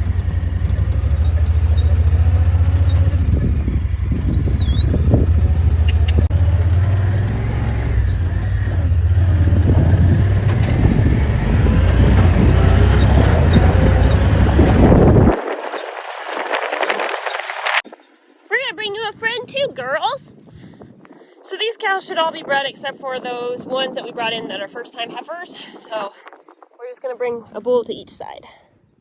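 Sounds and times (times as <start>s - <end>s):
vehicle engine droning: 0.0s - 17.8s.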